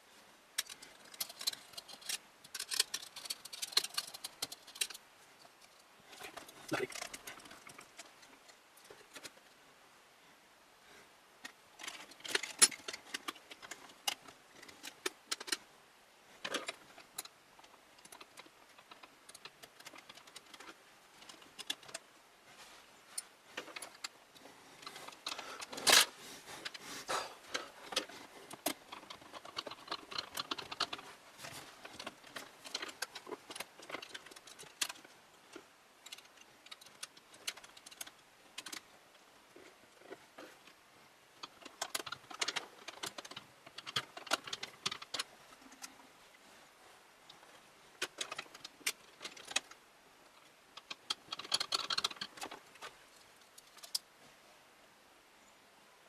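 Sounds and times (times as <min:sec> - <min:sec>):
computer parts clicking and rattling: 0:00.6 - 0:05.0, 0:05.6 - 0:09.4, 0:11.4 - 0:15.6, 0:16.4 - 0:22.0, 0:27.5 - 0:38.9, 0:41.4 - 0:45.9, 0:48.0 - 0:49.8, 0:50.8 - 0:52.9.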